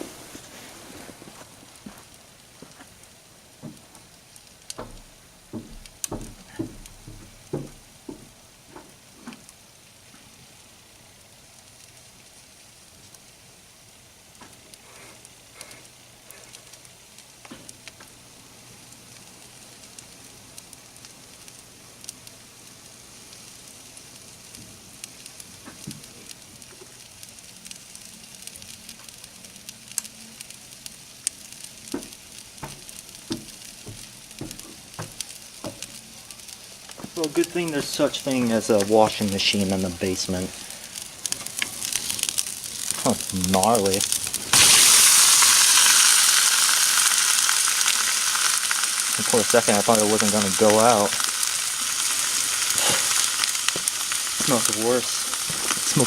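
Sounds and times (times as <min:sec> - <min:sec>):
crackling and sizzling in microwave: 0:00.0 - 0:56.0
loud knocks: 0:04.8 - 0:08.3.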